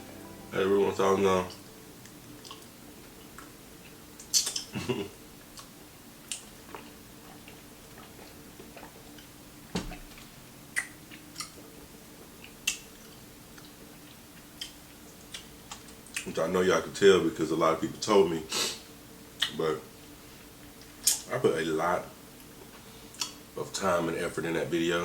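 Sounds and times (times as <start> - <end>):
faint steady hum: 0.0 - 25.0
chewing crispy chicken: 2.0 - 16.4.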